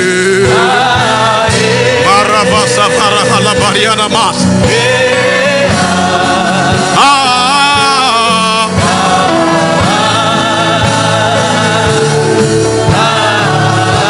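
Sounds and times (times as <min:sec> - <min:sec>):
choir singing held notes: 0:00.0 - 0:14.0
instruments playing: 0:00.0 - 0:14.0
steady drum beat: 0:00.0 - 0:14.0.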